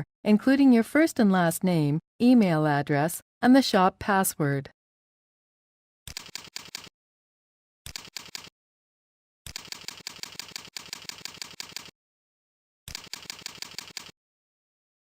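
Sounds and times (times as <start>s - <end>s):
keyboard typing: 6.1s - 6.9s, 7.9s - 8.5s, 9.5s - 11.9s, 12.9s - 14.2s.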